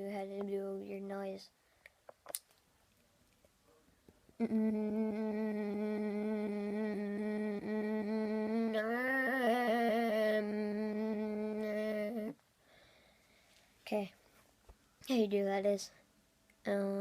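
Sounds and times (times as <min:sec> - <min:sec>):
person humming with pulsing flutter: 0:04.4 - 0:12.4.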